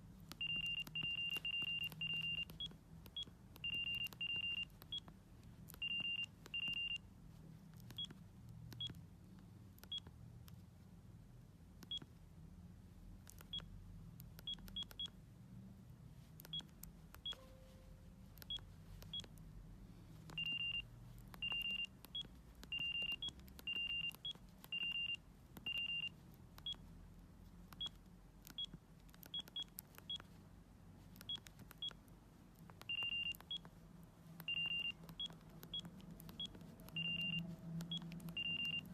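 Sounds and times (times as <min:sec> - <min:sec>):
mobile phone beeping: 0:00.3 - 0:07.1, 0:07.8 - 0:09.0, 0:14.4 - 0:15.2, 0:16.4 - 0:19.4, 0:20.1 - 0:26.9, 0:27.7 - 0:30.4, 0:31.1 - 0:32.0, 0:32.6 - 0:38.9.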